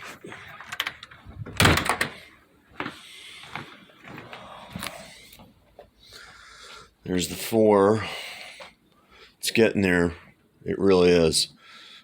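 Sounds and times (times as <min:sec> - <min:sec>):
loud door rattle: 0:00.6 - 0:02.3
door clicks and knocks: 0:00.7 - 0:02.2.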